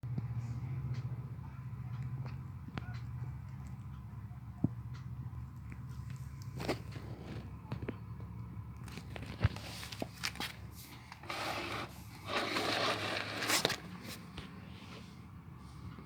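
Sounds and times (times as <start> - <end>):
low steady hum: 0.0 - 16.0
rustling or scraping: 8.9 - 15.2.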